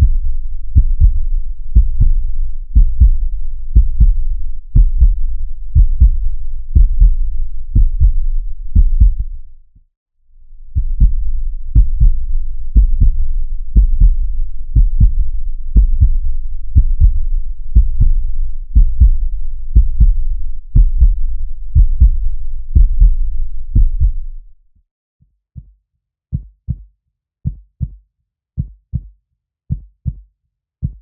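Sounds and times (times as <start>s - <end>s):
muffled heartbeat thumps: 0.8s - 2.2s, 2.8s - 4.2s, 4.8s - 5.2s, 5.8s - 9.3s, 10.8s - 13.2s, 13.8s - 14.2s, 14.8s - 16.2s, 16.8s - 18.2s, 18.8s - 20.2s, 20.8s - 21.2s, 21.8s - 23.2s, 23.8s - 24.2s.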